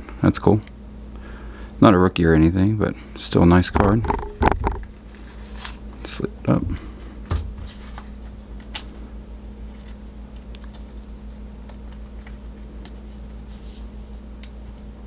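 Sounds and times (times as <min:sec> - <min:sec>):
low electrical hum: 0:00.0 - 0:15.0
trading cards clicking and rustling: 0:03.7 - 0:09.0.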